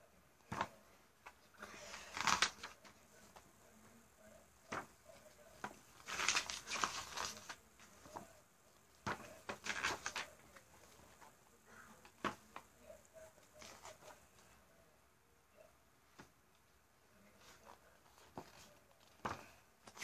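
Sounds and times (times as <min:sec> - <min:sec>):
rustling and scraping: 0:17.2 - 0:20.0.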